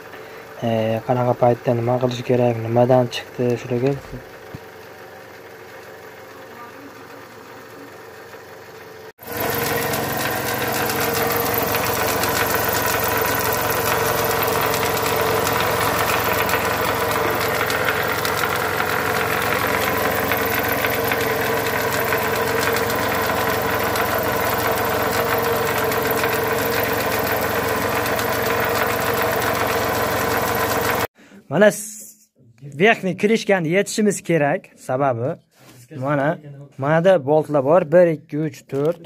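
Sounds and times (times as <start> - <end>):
car engine idling with knock: 3.8 - 31.1.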